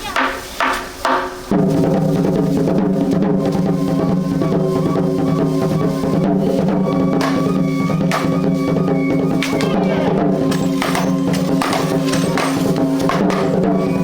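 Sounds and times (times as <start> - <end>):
music with sustained tones and drums: 0.0 - 14.0
sharp drum hits: 9.3 - 14.0.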